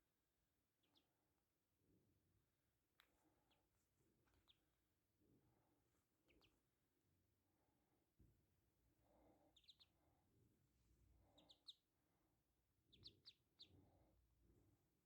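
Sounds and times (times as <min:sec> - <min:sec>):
ducklings peeping: 0:00.8 - 0:01.0, 0:04.2 - 0:04.6, 0:06.2 - 0:06.6, 0:09.5 - 0:10.0, 0:11.2 - 0:11.9, 0:12.8 - 0:13.8.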